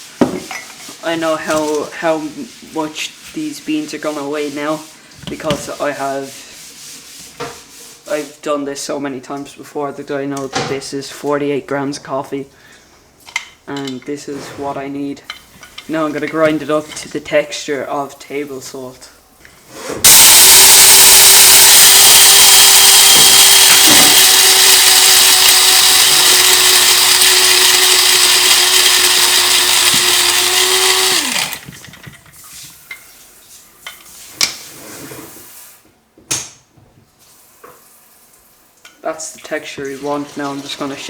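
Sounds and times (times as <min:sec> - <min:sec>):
coffee grinder motor whirring: 0:20.0 - 0:32.2.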